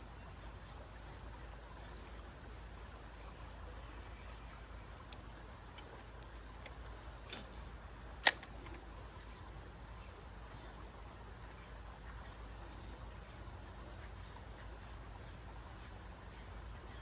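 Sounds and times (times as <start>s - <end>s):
faint ticks: 0.0s - 17.0s
low background noise: 0.0s - 17.0s
sharp click: 5.8s - 8.8s.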